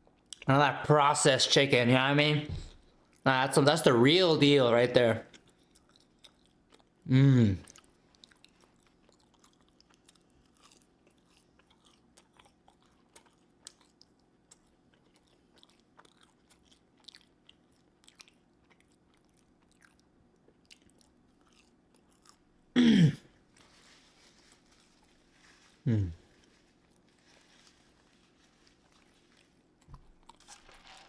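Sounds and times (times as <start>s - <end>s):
person chewing: 5.3s - 22.6s, 23.3s - 31.0s
person humming mmm: 7.1s - 7.7s, 25.9s - 26.3s.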